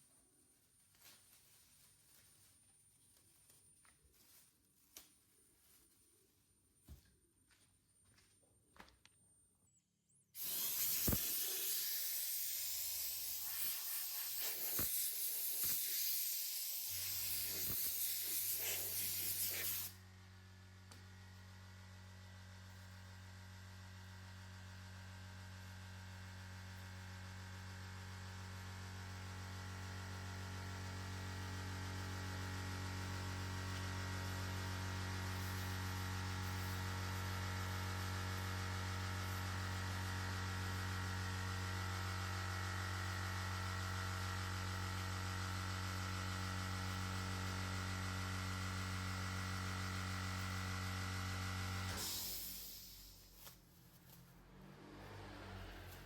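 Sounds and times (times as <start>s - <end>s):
spray hiss: 10.4s - 20.0s, 51.9s - 53.5s.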